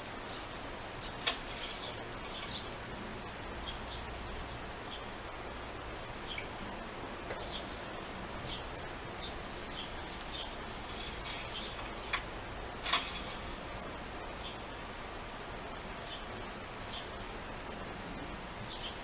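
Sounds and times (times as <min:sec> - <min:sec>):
background hiss: 0:00.0 - 0:19.0
bird chirping: 0:00.2 - 0:02.8, 0:03.5 - 0:05.2, 0:06.2 - 0:06.6, 0:07.2 - 0:12.2, 0:14.3 - 0:14.7, 0:16.0 - 0:17.2, 0:18.6 - 0:19.0.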